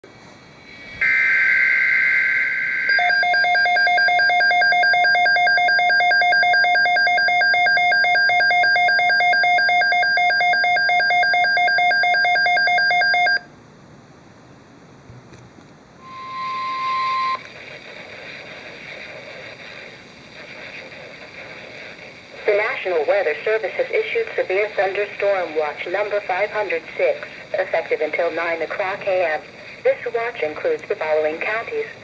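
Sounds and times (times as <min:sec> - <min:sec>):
screechy digital data tones: 0:00.6 - 0:05.5, 0:16.0 - 0:17.5
pulsing electronic alert beep: 0:16.0 - 0:17.4.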